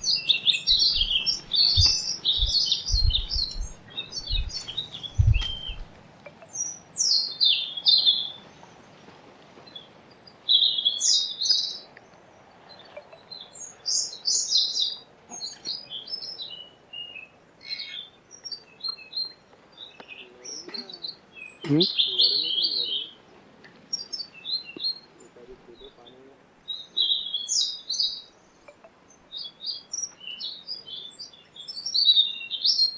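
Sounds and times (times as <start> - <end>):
low thumps: 0.0 - 6.0
birds chirping and twittering: 0.0 - 32.9.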